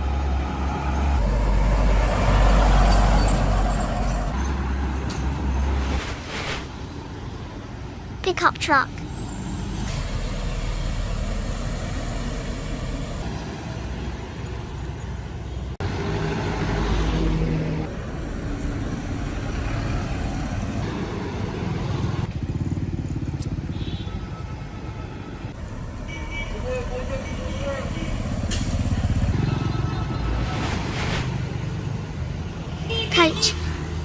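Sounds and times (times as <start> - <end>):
pickup truck engine and road noise: 0.0 - 26.1.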